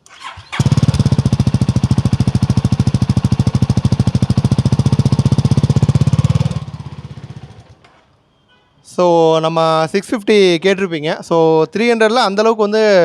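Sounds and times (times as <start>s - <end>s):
motorcycle engine idling: 0.2s - 7.8s.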